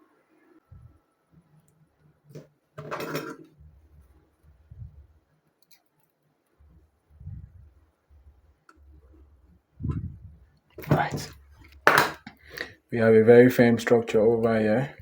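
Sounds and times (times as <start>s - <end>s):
low bumps: 9.8s - 11.4s.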